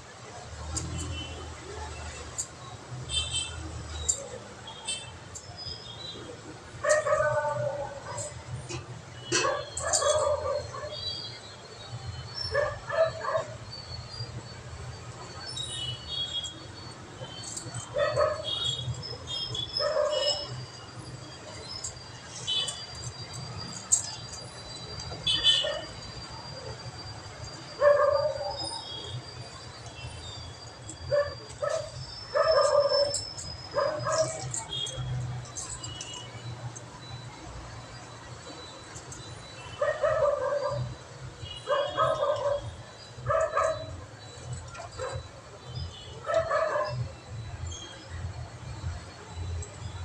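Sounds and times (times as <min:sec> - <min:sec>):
dog barking: 0:06.8 - 0:08.3, 0:09.3 - 0:11.0, 0:12.5 - 0:13.6, 0:17.9 - 0:18.6, 0:19.8 - 0:20.5, 0:25.4 - 0:25.9, 0:27.8 - 0:28.7, 0:31.1 - 0:34.6, 0:39.8 - 0:41.0, 0:41.6 - 0:43.9, 0:46.2 - 0:47.0.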